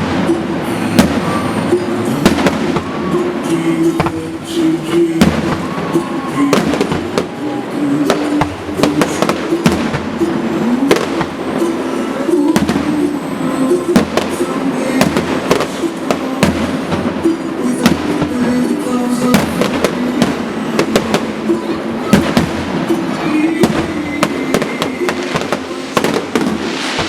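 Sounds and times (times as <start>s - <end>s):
fireworks bursting: 0.0s - 27.0s
music playing: 0.0s - 27.0s.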